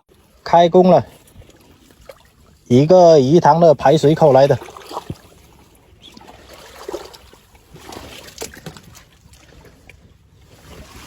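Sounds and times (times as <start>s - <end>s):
water sloshing and splashing: 0.0s - 11.0s
sharp splashes: 1.0s - 2.7s, 3.9s - 9.9s.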